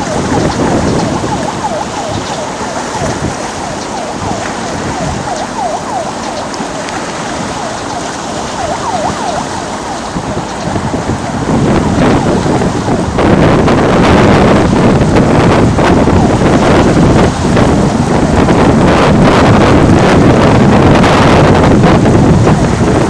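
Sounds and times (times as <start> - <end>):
short calls dipping and rising: 0.0 - 10.8
wind noise on microphone: 0.0 - 23.0.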